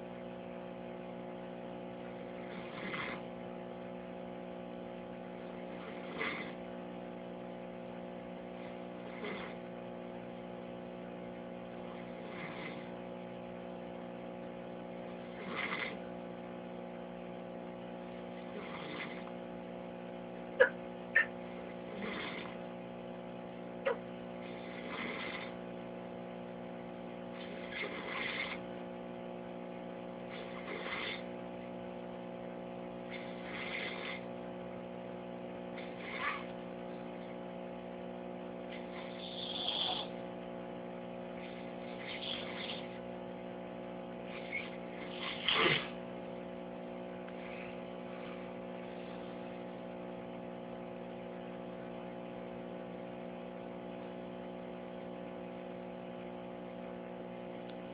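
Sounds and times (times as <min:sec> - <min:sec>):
electrical hum: 0:00.0 - 0:57.9
person snoring: 0:02.3 - 0:03.3, 0:05.6 - 0:06.7, 0:08.6 - 0:09.7, 0:11.9 - 0:13.0, 0:15.2 - 0:16.0, 0:18.4 - 0:19.3, 0:20.6 - 0:22.6, 0:23.9 - 0:25.6, 0:27.4 - 0:28.6, 0:30.2 - 0:31.3, 0:33.0 - 0:34.3, 0:35.8 - 0:36.5, 0:38.8 - 0:40.1, 0:41.4 - 0:43.0, 0:44.3 - 0:46.0.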